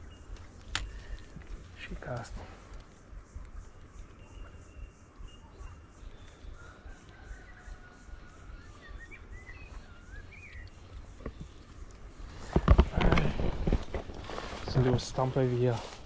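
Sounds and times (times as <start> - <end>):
faint high insect pulsing: 0.0 - 16.0
wind rumble on microphone: 0.0 - 16.0
bird whistled calls: 4.1 - 10.9.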